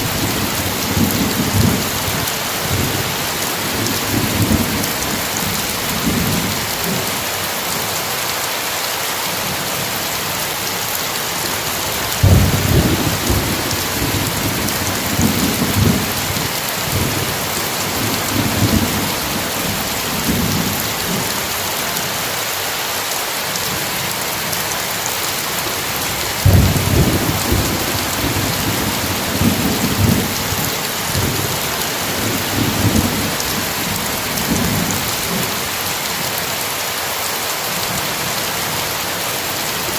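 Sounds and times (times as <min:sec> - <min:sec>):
heavy rain: 0:00.0 - 0:39.9
thunder rumbling: 0:12.2 - 0:17.4, 0:26.1 - 0:35.5.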